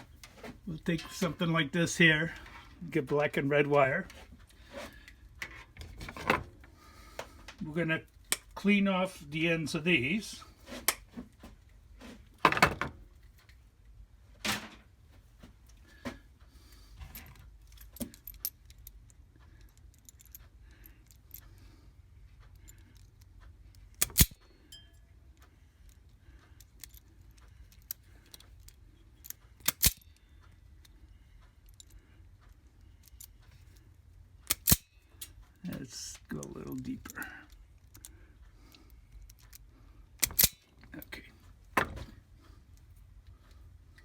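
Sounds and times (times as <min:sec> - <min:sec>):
small metallic clicks and clinks: 0:17.0 - 0:21.7, 0:22.3 - 0:41.3.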